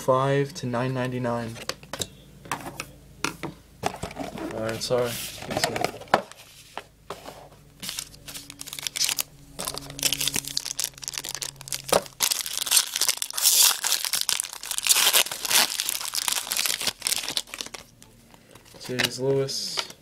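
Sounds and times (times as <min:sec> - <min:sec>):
card pack wrapper crinkling: 0:07.8 - 0:20.0.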